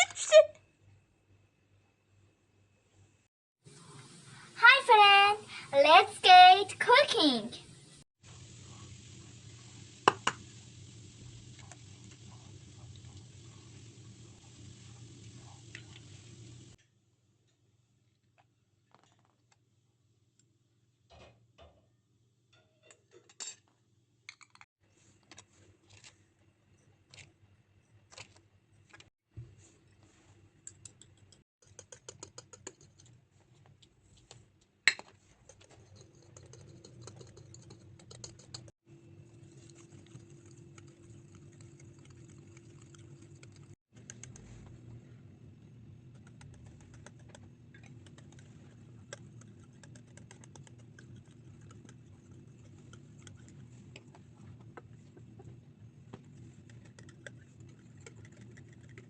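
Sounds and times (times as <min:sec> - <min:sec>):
utensils clicking and tapping: 0:30.6 - 0:33.2, 0:34.9 - 0:38.7, 0:39.6 - 0:44.5, 0:46.1 - 0:55.5.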